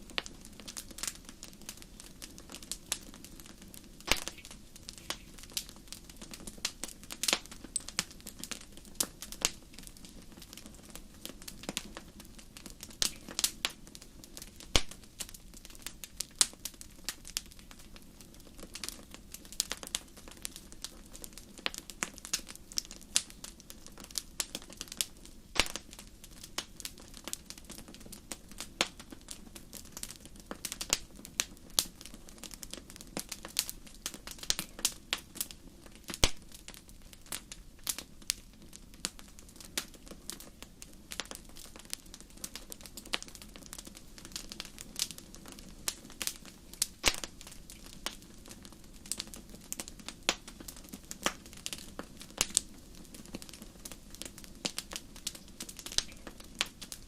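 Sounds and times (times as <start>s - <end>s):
sharp pops of burning wood: 0.0s - 57.0s
wood fire crackling: 0.0s - 57.0s.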